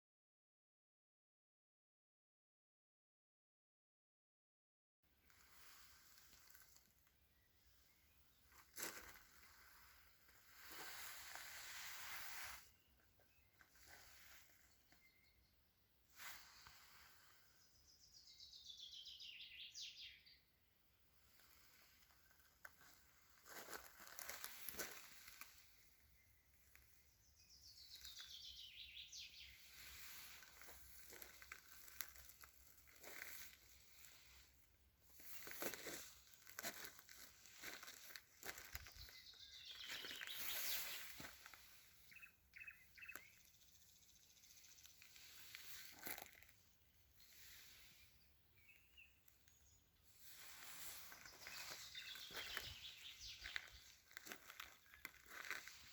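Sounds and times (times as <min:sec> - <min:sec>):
soft crackles: 0:05.2 - 0:15.1, 0:16.1 - 0:17.6, 0:21.2 - 0:27.1, 0:29.4 - 0:55.9
songbird trill: 0:12.5 - 0:15.7, 0:17.5 - 0:20.6, 0:23.8 - 0:34.1, 0:35.1 - 0:46.5, 0:47.2 - 0:55.9
bird chirps: 0:12.6 - 0:15.6, 0:17.6 - 0:20.5, 0:26.1 - 0:31.4, 0:38.5 - 0:46.4, 0:48.6 - 0:54.0.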